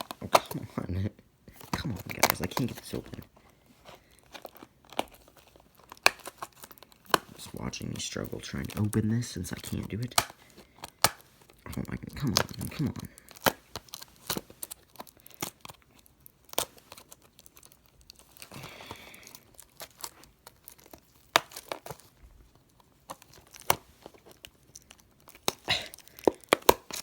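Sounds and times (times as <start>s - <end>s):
crinkly wrapper being squeezed: 0.0s - 27.0s.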